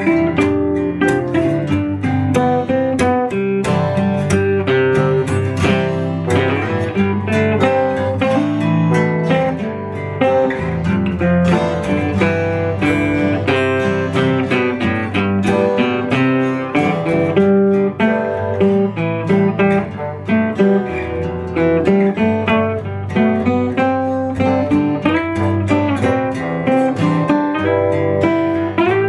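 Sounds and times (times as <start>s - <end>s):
guitar strummed and picked: 0.0s - 29.0s.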